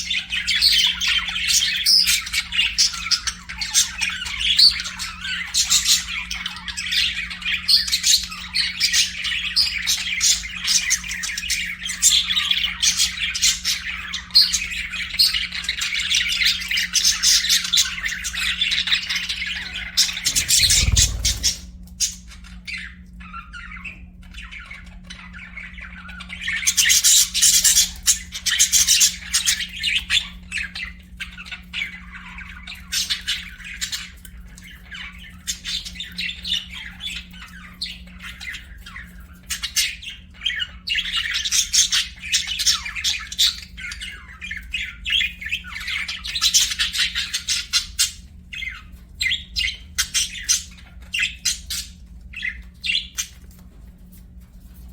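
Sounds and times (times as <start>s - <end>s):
budgerigars chattering and warbling: 0.0s - 53.4s
steady low hum: 19.8s - 22.2s.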